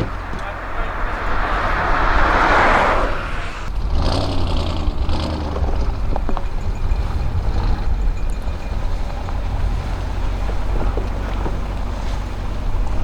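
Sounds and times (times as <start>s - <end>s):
loud rush of vehicle: 0.0s - 5.8s
low engine rumble: 0.0s - 13.0s.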